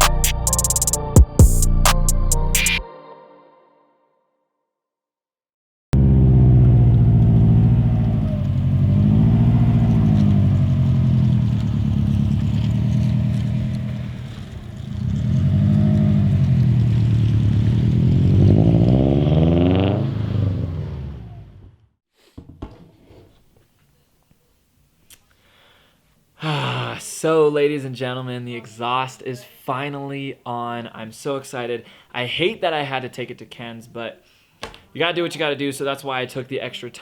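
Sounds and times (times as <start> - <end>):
car engine revving: 6.0 - 21.8.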